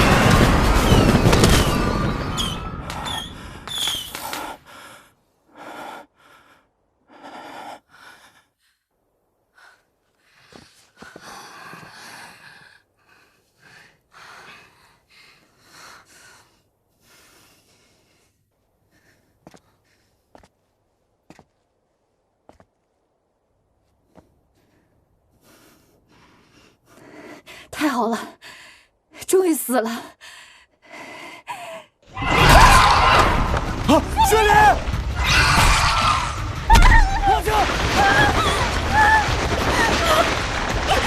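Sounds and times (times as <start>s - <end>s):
loud blast: 0.0s - 3.2s
people gasping and breathing hard: 36.3s - 41.0s.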